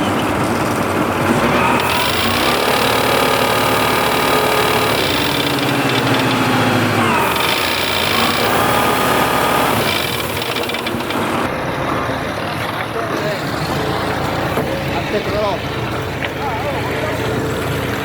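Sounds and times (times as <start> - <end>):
small engine running: 0.0 - 18.0.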